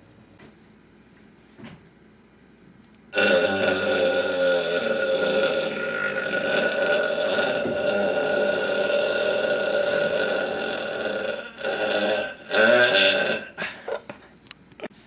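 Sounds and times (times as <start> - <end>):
man belching: 3.2 - 13.7.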